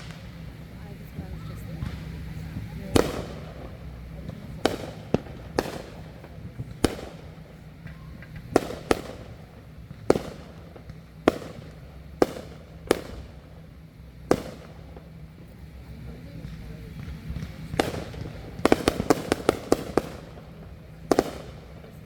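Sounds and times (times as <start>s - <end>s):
fireworks bangs: 0.0s - 22.0s.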